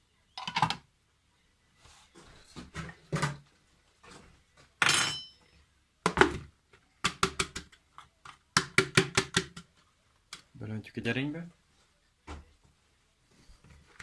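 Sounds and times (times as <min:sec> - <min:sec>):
dishes and utensils clinking: 0:04.8 - 0:05.5.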